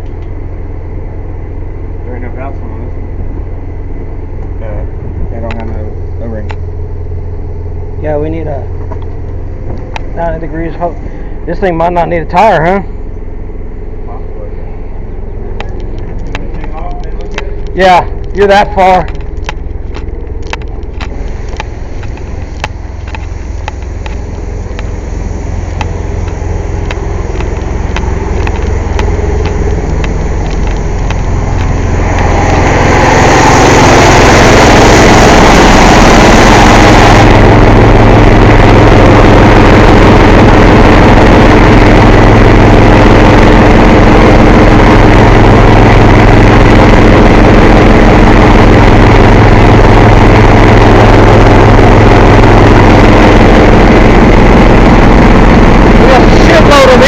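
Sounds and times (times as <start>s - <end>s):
air compressor humming: 0.0s - 57.0s
bright hiss: 21.1s - 37.8s.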